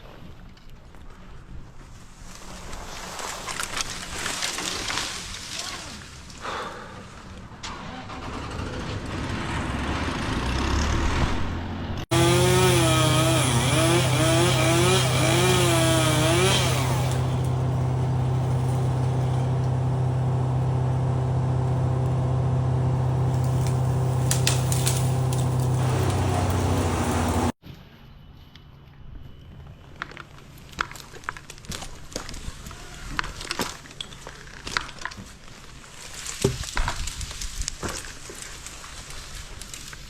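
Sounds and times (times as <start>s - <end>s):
chainsaw cutting branches: 12.1s - 27.6s.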